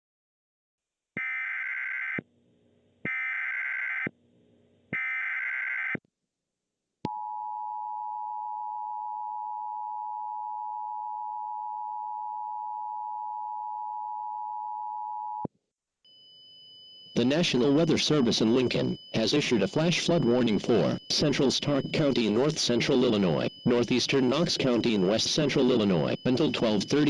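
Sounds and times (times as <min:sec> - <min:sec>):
two-tone attention signal: 0:16.1 - 0:27.0
buzzy digital data bursts: 0:17.2 - 0:27.0.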